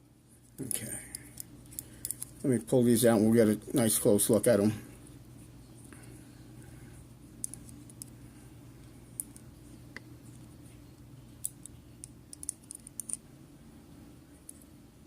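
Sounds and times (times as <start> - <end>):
faint steady hum: 0.0 - 15.0
lock pins clicking: 11.4 - 13.2.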